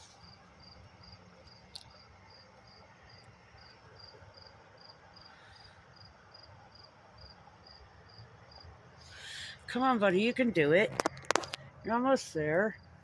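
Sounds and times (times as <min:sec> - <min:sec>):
cricket chirping: 0:00.0 - 0:08.8, 0:12.7 - 0:13.0.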